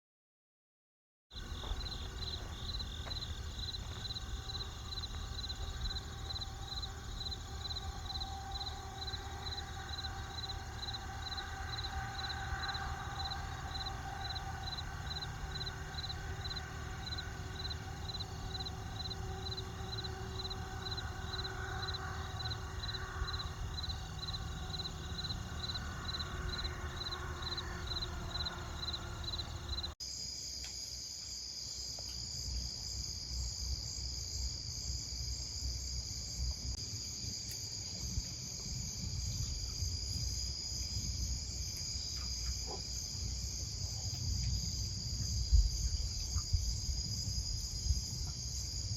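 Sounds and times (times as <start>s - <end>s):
insects chirping: 1.3s - 48.9s
low rumbling noise: 1.4s - 30.0s
high-pitched insect trill: 1.4s - 48.9s.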